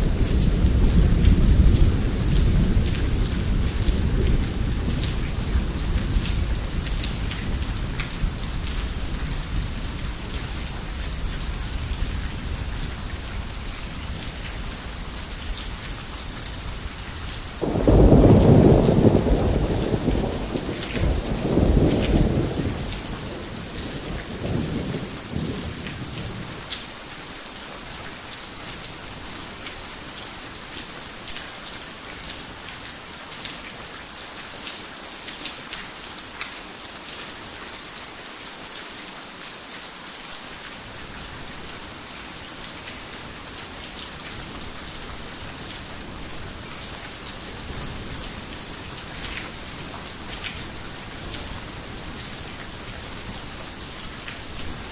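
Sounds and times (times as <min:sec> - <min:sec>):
heavy rain falling: 0:00.0 - 0:54.9
thunder rumbling: 0:17.6 - 0:25.7.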